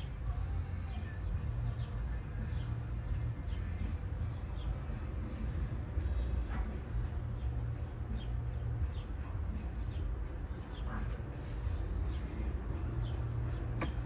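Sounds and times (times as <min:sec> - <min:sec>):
small birds chirping: 0:07.3 - 0:14.0.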